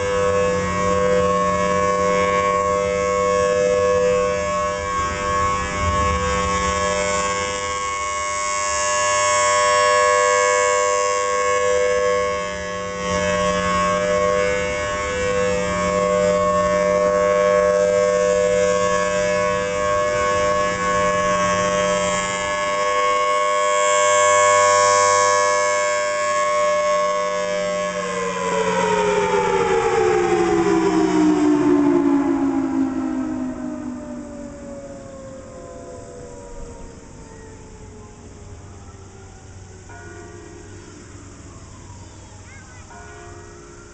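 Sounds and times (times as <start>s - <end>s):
rotating warning siren steady tone: 0.0s - 43.9s.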